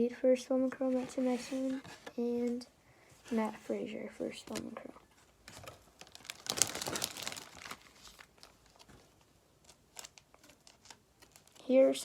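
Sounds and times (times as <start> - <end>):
plastic packaging crinkling: 4.5 - 12.0.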